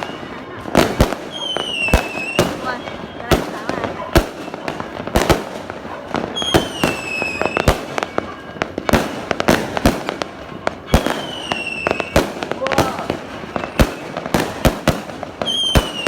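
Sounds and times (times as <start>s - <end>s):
fireworks bangs: 0.0s - 16.0s
fireworks whistles falling in pitch: 6.3s - 9.8s, 10.8s - 16.0s.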